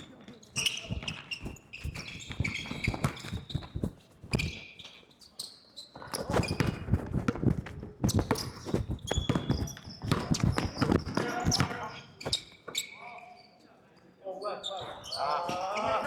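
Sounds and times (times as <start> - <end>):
shoe squeaks: 0.0 - 13.6, 14.6 - 16.0
basketball dribbling: 0.6 - 4.6, 6.4 - 11.9
running footsteps: 6.2 - 12.4.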